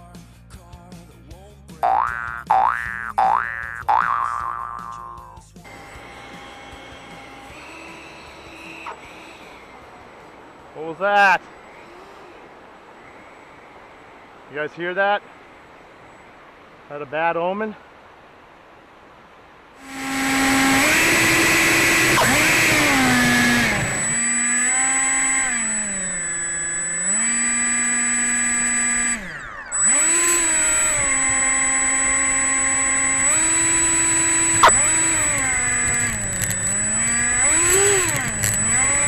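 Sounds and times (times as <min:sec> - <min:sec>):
electric ducted fan motor whine: 0:05.6 - 0:16.9, 0:18.0 - 0:39.0
steady high-pitched tone: 0:19.8 - 0:39.0.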